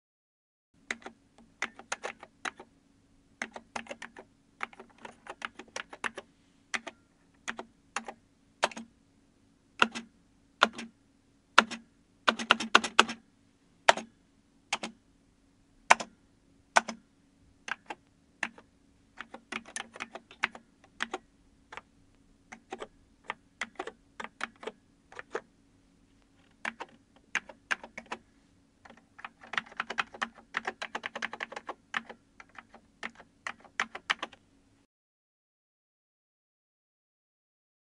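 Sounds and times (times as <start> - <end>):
keyboard typing: 0.8 - 2.7, 3.4 - 8.9, 9.8 - 10.9, 11.6 - 13.2, 13.9 - 14.1, 14.7 - 15.0, 15.9 - 17.0, 17.6 - 21.9, 22.5 - 25.5, 26.4 - 28.2, 28.8 - 34.4
faint steady hum: 0.8 - 34.9.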